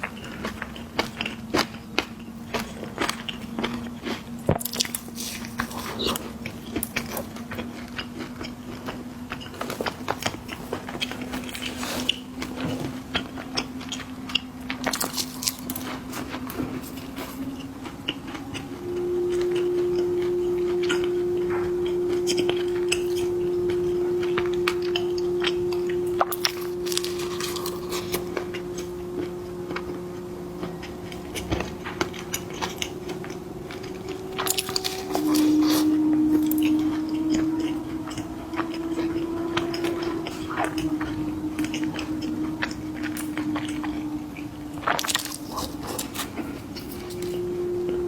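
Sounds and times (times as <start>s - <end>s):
person biting and chewing snacks: 0.0s - 17.4s, 26.3s - 28.2s, 44.8s - 47.3s
steady hum: 0.0s - 48.0s.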